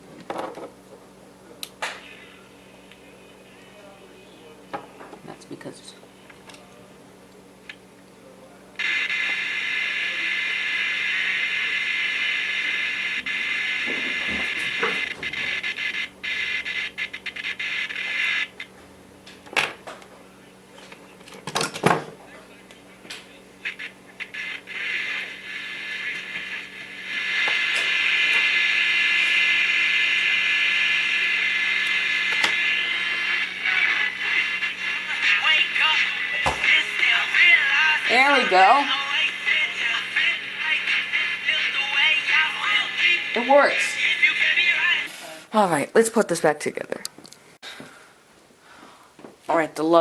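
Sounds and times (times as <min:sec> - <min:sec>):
radio static hiss: 0:01.8 - 0:04.7, 0:08.8 - 0:18.7, 0:22.2 - 0:45.6.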